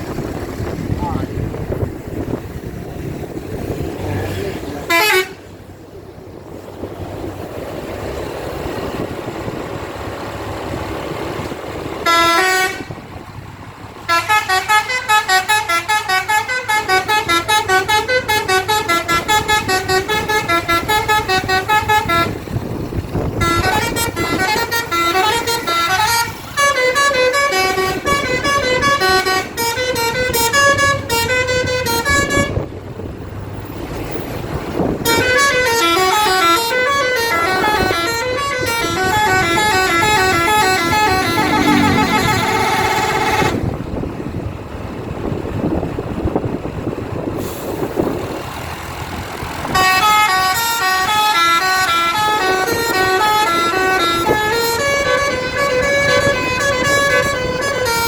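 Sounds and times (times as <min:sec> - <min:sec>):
bus engine noise: 0:00.0 - 0:58.0
bus horn playing melodies: 0:04.8 - 0:05.6, 0:12.0 - 0:13.0, 0:14.0 - 0:32.8, 0:34.8 - 0:43.8, 0:49.6 - 0:58.0
short horn blast: 0:35.0 - 0:43.8, 0:49.8 - 0:58.0.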